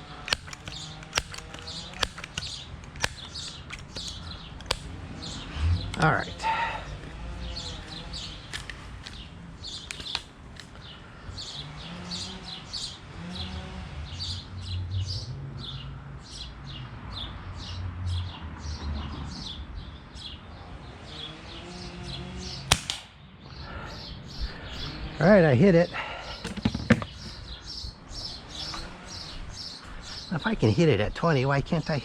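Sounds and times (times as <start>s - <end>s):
small birds chirping: 0.0s - 32.0s
pellet pistol shot: 22.7s - 23.2s.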